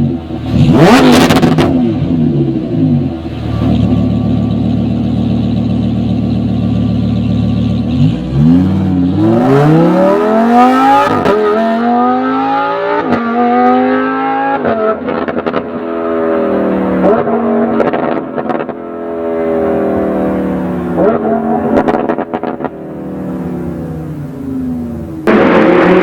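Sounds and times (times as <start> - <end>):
sports car engine accelerating: 0.0 - 26.0
exhaust crackles and pops: 25.2 - 26.0.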